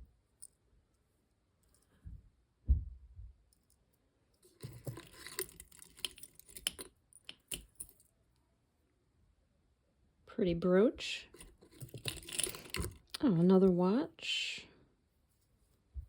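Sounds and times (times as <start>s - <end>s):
metal jewelry clinking: 4.4s - 8.2s, 11.3s - 13.2s.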